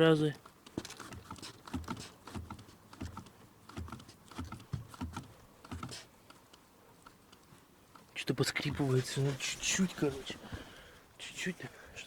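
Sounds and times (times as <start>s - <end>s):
clutch pedal clicks and knocks: 0.4s - 6.6s.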